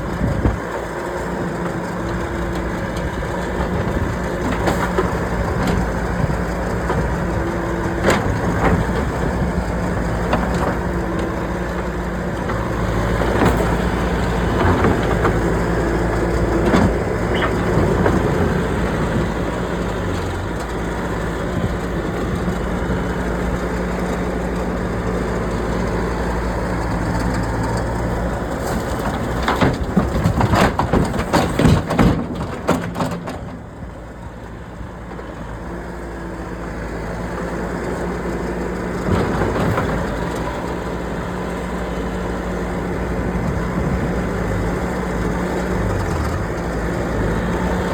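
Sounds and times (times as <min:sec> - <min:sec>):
diesel engine running: 0:00.0 - 0:47.9
metal knocks and clanks: 0:28.7 - 0:33.6.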